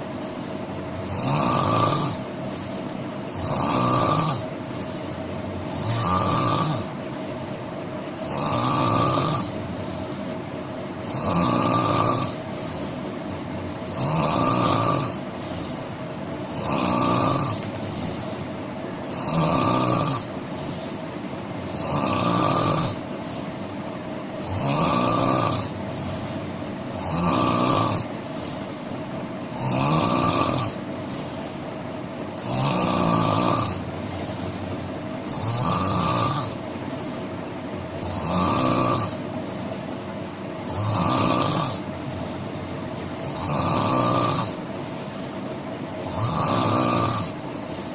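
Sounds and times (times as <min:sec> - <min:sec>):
person snoring: 0:00.0 - 0:10.3, 0:11.0 - 0:31.6, 0:32.3 - 0:37.2, 0:37.9 - 0:39.3, 0:40.6 - 0:47.9
steady background noise: 0:00.0 - 0:47.9.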